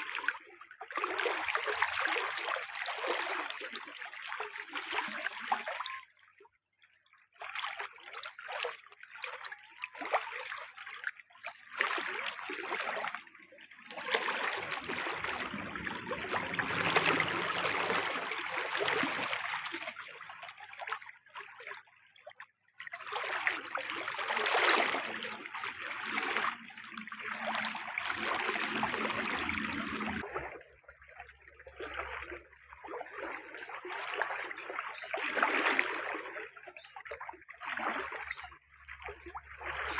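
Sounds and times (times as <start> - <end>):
water running and splashing: 13.8 - 21.7.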